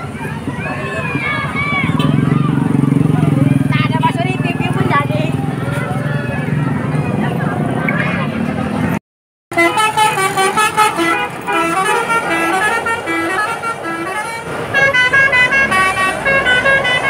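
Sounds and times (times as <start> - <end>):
multi-trumpet bus horn melody: 9.5 - 17.0.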